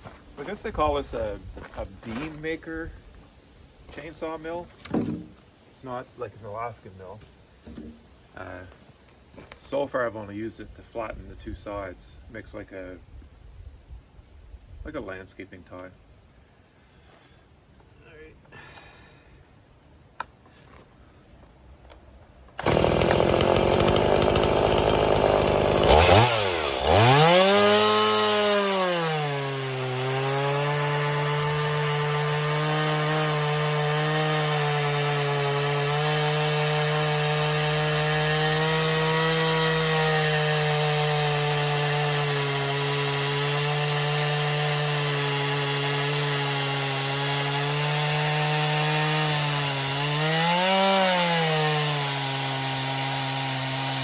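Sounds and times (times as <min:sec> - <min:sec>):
chainsaw cutting wood: 0:22.5 - 0:54.0.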